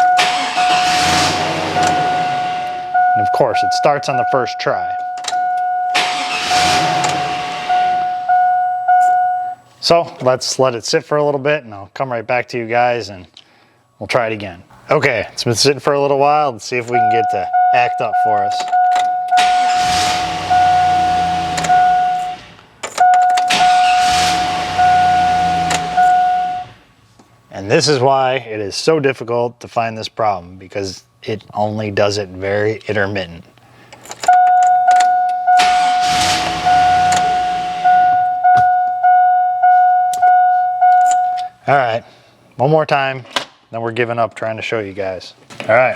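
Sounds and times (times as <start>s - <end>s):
dashboard warning chime: 0.0s - 0.8s, 1.5s - 9.6s, 16.8s - 26.8s, 34.2s - 41.6s
starter cranking engine: 0.2s - 2.7s, 6.0s - 7.4s, 23.3s - 24.9s
high electronic tone: 20.2s - 22.4s, 23.0s - 26.8s, 34.4s - 41.4s.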